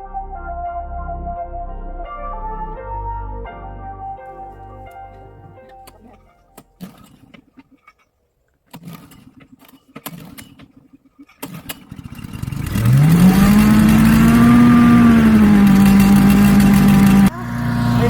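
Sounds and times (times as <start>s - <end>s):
clicks and knocks: 4.9s - 11.9s
small gasoline engine running: 8.7s - 10.7s, 11.4s - 18.0s.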